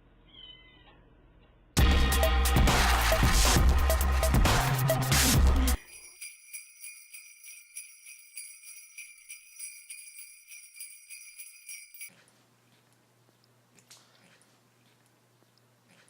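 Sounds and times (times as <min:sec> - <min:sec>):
small bell jingling: 0:05.8 - 0:12.1.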